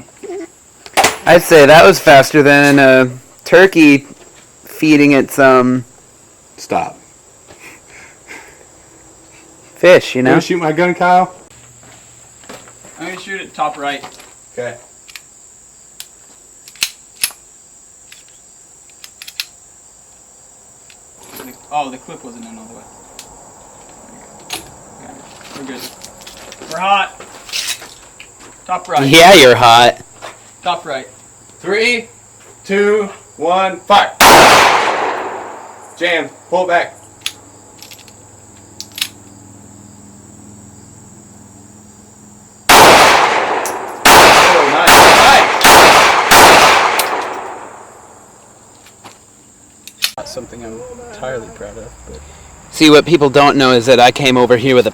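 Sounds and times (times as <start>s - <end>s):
crickets chirping: 0.0s - 54.9s
firearm clicks: 16.0s - 17.4s, 18.1s - 19.6s, 38.8s - 39.2s, 45.6s - 47.6s, 49.8s - 50.2s
gun action clicking: 18.1s - 19.6s, 38.8s - 39.2s, 49.9s - 50.2s.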